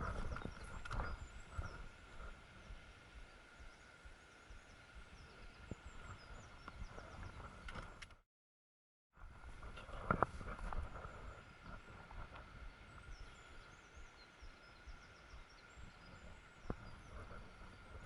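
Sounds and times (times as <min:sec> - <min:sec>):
outdoor background noise: 0:00.0 - 0:08.2, 0:09.1 - 0:18.0
faint high bird chirps: 0:12.6 - 0:18.0.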